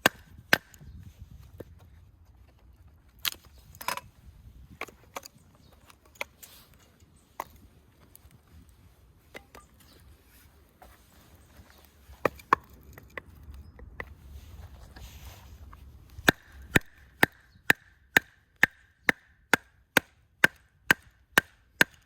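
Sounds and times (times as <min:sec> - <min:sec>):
wood being chopped: 0:00.0 - 0:00.9, 0:16.2 - 0:22.0.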